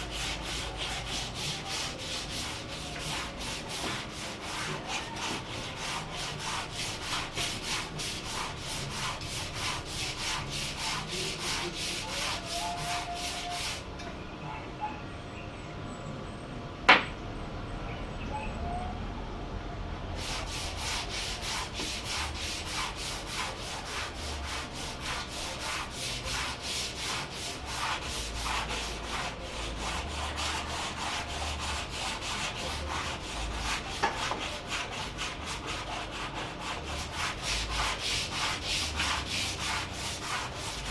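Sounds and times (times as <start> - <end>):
wood being sanded by hand: 0.0 - 13.8, 20.2 - 40.9.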